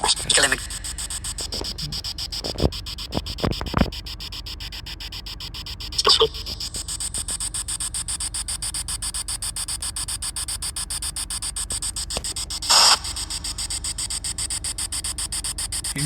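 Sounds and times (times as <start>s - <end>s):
pulsing radio static: 0.0s - 16.0s
short burst of noise: 12.6s - 13.4s.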